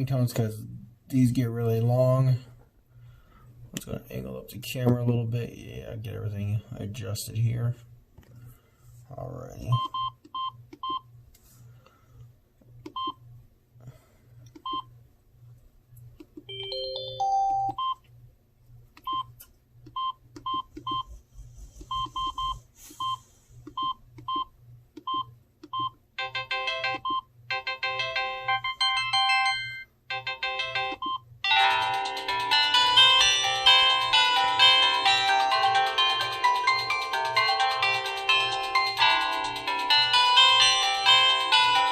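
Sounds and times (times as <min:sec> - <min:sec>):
phone ringtone beeps and melody: 0:16.5 - 0:18.0, 0:26.2 - 0:41.9.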